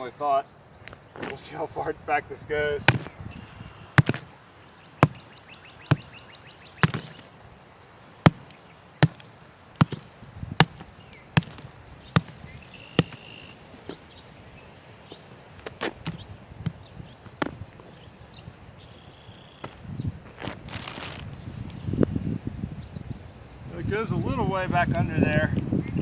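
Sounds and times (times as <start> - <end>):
sledgehammer striking pavement: 2.8 - 3.3, 4.0 - 7.5, 8.2 - 13.6, 15.8 - 17.9.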